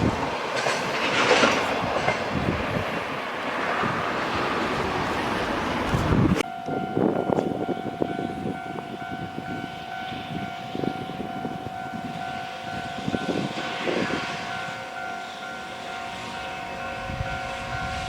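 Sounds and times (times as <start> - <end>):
freight train rumbling on rails: 0.0 - 18.0
level-crossing warning bell: 6.4 - 18.0.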